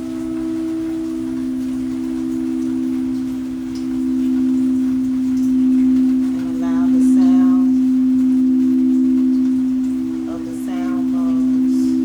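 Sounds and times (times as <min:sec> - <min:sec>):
singing bowl hum: 0:00.0 - 0:12.0
higher call with overtones: 0:06.4 - 0:12.0.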